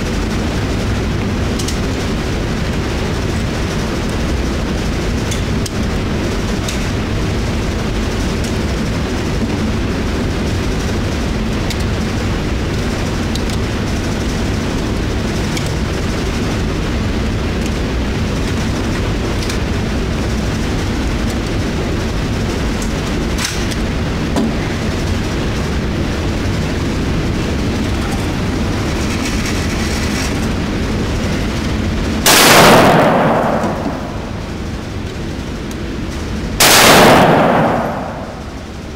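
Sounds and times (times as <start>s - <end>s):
low rumble: 23.9s - 38.9s
loud pistol shot: 32.2s - 34.5s, 36.6s - 38.9s.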